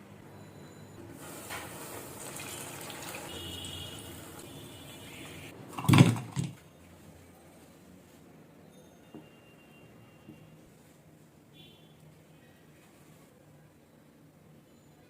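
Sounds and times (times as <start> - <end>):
water running from a tap: 1.2 - 4.6.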